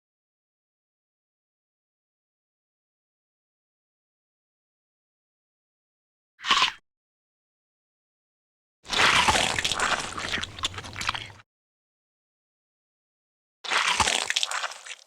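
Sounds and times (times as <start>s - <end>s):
cartoon wet squishy chewing: 8.9s - 11.4s, 13.7s - 15.0s.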